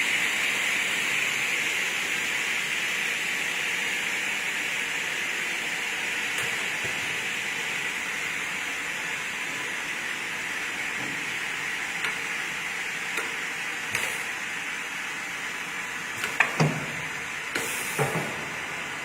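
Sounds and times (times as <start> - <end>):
cutting saw hissing: 12.0 - 14.5.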